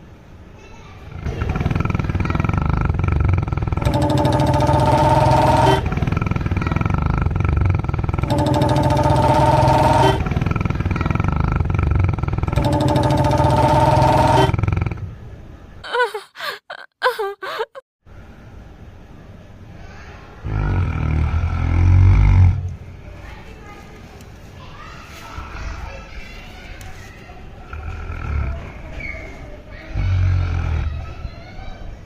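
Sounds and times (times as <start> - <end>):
dog snoring loudly: 1.1 - 15.1, 20.4 - 22.7, 27.7 - 28.9, 29.9 - 31.0.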